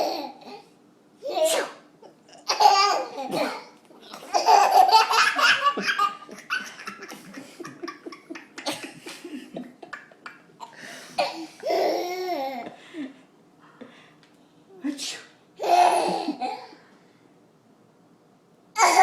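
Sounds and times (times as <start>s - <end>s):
toddler laughing: 4.2s - 12.8s, 15.6s - 16.6s.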